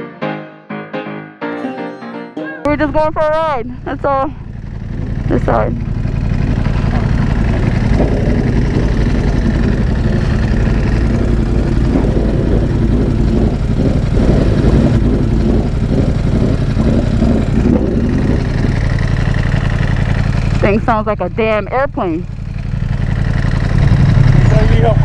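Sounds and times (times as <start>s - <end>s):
motorcycle engine idling: 2.7s - 25.0s.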